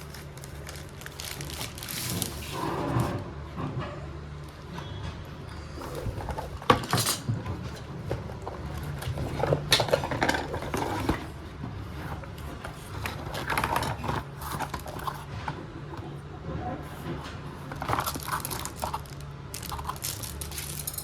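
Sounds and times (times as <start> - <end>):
packaging clicks and knocks: 0.0 - 3.2, 12.0 - 15.3, 16.9 - 21.0
packaging rustling: 0.0 - 3.2, 7.6 - 15.3, 16.8 - 21.0.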